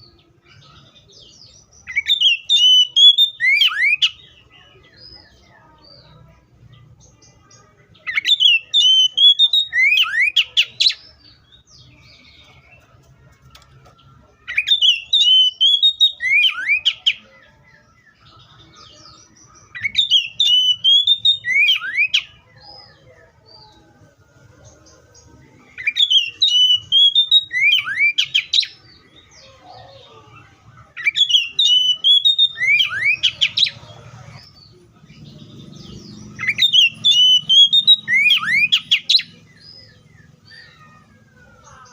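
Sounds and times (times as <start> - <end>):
bird singing warbled phrase: 0.0 - 13.0, 14.0 - 41.9.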